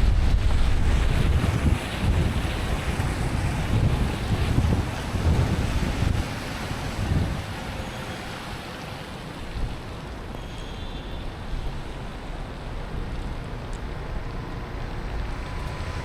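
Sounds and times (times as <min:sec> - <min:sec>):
wind buffeting microphone: 0:00.0 - 0:08.5
road rumble: 0:00.0 - 0:16.0
tyres hissing on wet road: 0:00.1 - 0:16.0.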